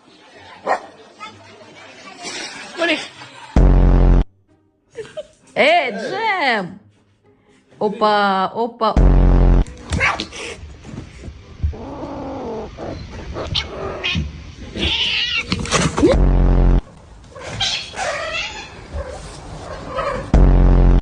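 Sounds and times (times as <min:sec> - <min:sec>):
loud low rumble: 0:03.6 - 0:04.3, 0:09.0 - 0:09.7, 0:16.2 - 0:16.8, 0:20.4 - 0:21.0.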